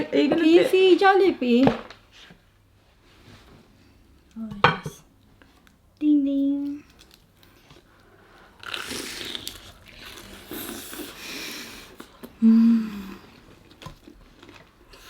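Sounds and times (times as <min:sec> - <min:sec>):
crunching and chewing fried chicken: 0:06.9 - 0:12.4, 0:13.2 - 0:15.0
person humming: 0:12.4 - 0:13.2.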